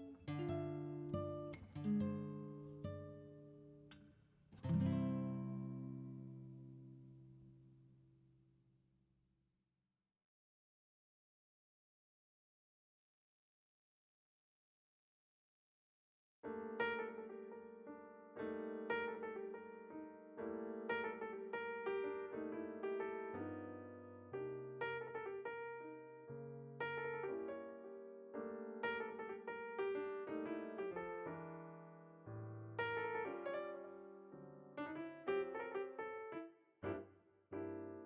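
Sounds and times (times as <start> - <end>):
gentle solo piano: 0.0 - 4.0, 4.6 - 7.7, 16.5 - 38.0.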